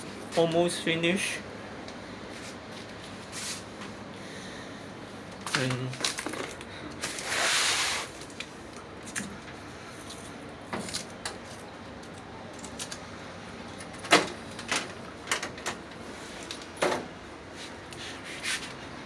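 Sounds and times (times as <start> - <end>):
scraping rustle: 7.0 - 8.3.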